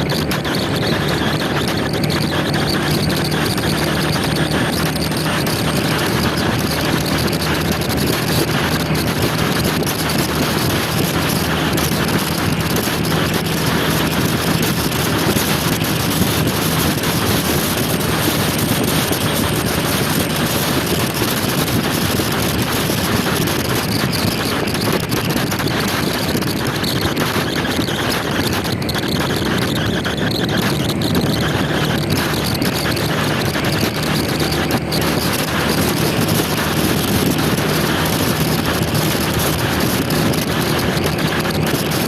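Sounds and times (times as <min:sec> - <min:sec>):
motor scooter engine: 0:00.0 - 0:42.0
road noise: 0:00.0 - 0:42.0
wind on microphone: 0:00.0 - 0:42.0.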